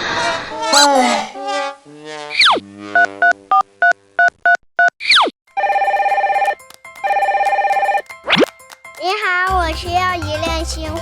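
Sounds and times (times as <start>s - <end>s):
telephone ringing: 5.5s - 9.0s.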